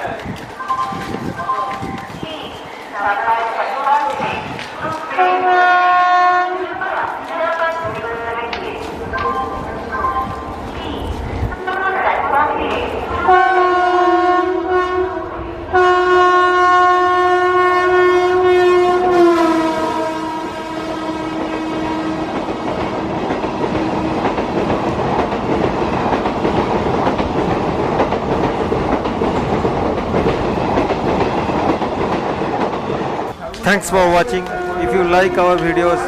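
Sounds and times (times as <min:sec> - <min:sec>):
train coaches rumbling and clacking: 0:00.0 - 0:16.2, 0:18.9 - 0:36.0
locomotive air horn blasts: 0:05.2 - 0:06.7, 0:13.2 - 0:22.3, 0:34.0 - 0:36.0.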